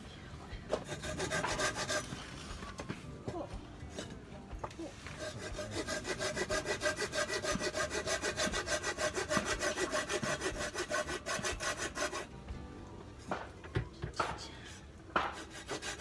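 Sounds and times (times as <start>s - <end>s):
hand saw cutting wood: 0.7s - 2.7s, 5.0s - 12.3s, 15.2s - 16.0s.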